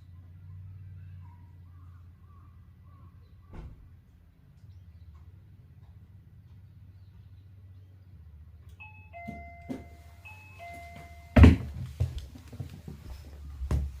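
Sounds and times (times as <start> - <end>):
two-note door chime: 8.8 - 11.7.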